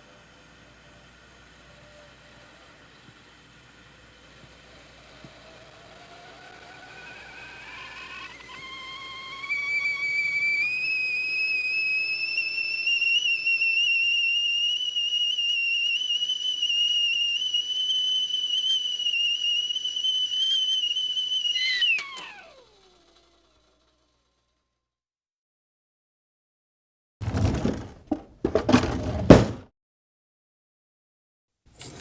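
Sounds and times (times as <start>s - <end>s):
high whistling whine: 0.8s - 23.7s.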